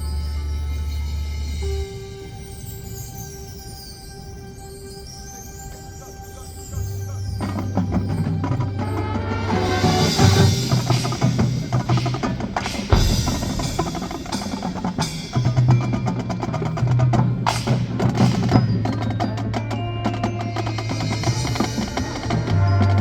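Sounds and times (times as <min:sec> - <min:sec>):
mallet percussion: 0:00.0 - 0:23.0
marching band drums: 0:07.4 - 0:23.0.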